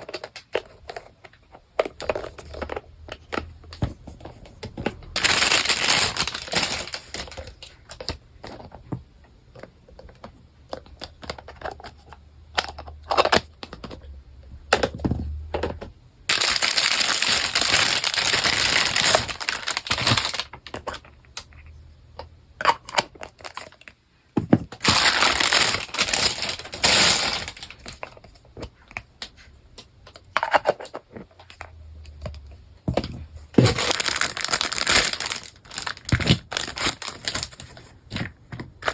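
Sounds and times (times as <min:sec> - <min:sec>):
plastic packaging crinkling: 0:05.0 - 0:08.7, 0:16.3 - 0:21.1, 0:22.8 - 0:23.9, 0:24.7 - 0:28.4, 0:33.6 - 0:38.9.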